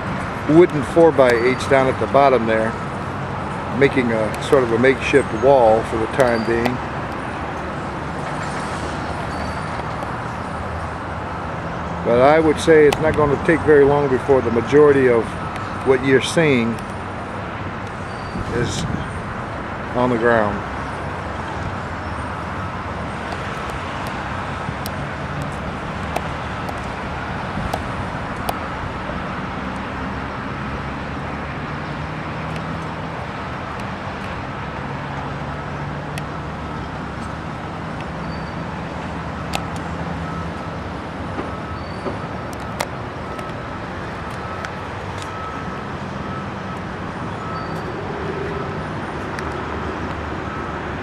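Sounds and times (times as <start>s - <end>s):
road traffic passing: 0.0s - 51.0s.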